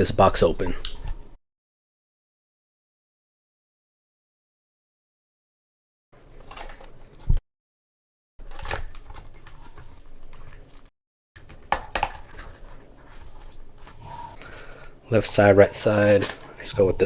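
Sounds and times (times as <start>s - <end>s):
packaging scraping and crinkling: 8.4s - 17.0s.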